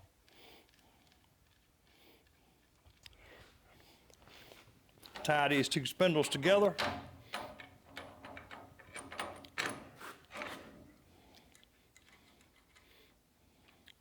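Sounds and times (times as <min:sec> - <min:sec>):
metal parts clinking: 0:06.2 - 0:12.8.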